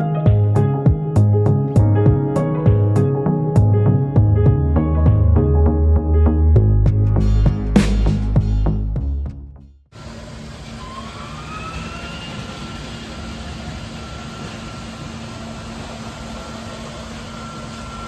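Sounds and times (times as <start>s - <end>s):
music: 0.0s - 9.9s
machine whine: 10.0s - 18.0s.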